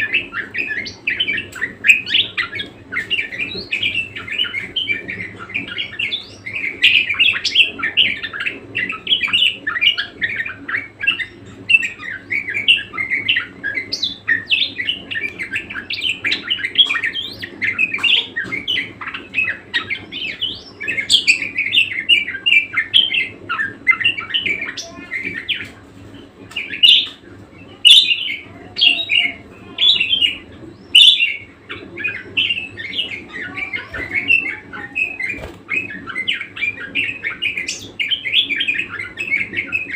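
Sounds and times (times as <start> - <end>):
budgerigar warbling and chirping: 0.0 - 25.7, 26.5 - 39.9.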